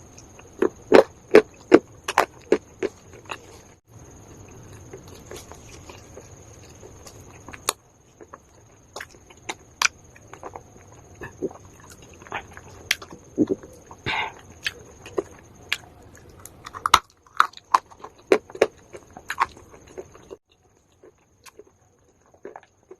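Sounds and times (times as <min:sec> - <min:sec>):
chalk crunching while chewed: 0:14.6 - 0:22.9.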